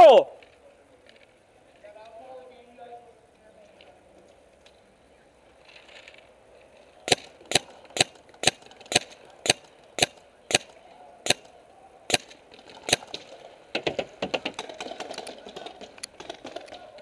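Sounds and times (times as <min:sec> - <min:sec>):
paintball marker shots: 0:07.1 - 0:11.5, 0:12.1 - 0:15.3.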